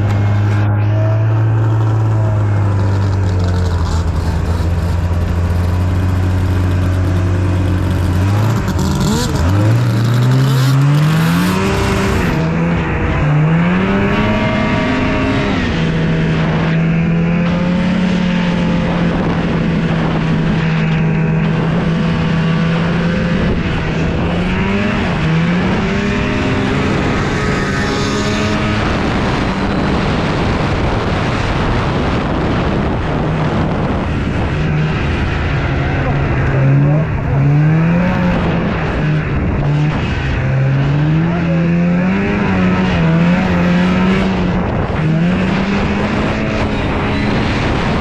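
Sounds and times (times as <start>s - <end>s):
snowmobile engine revving: 0.0s - 48.0s.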